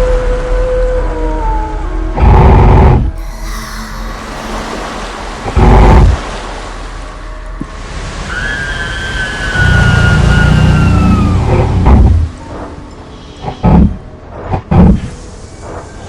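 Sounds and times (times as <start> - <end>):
rushing wind-like noise: 2.4 - 16.0
low rumble: 3.0 - 15.6
high tone sliding downward: 3.2 - 13.3.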